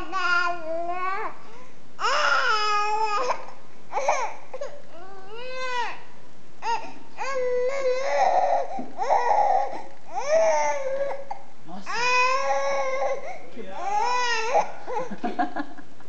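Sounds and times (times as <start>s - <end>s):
baby crying: 0.0s - 1.4s, 2.0s - 6.0s, 6.6s - 15.1s.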